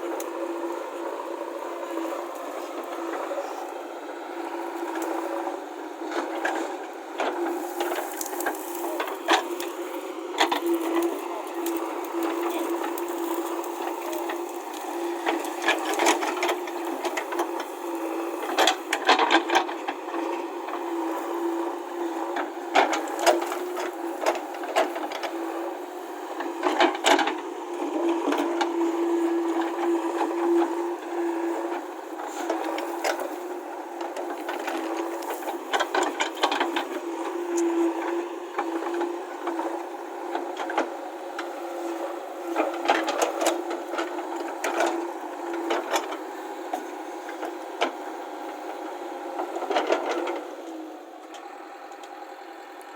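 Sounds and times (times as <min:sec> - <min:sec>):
backhoe loader engine hum: 0:00.0 - 0:52.9
gravel and stones scraping: 0:07.2 - 0:09.8.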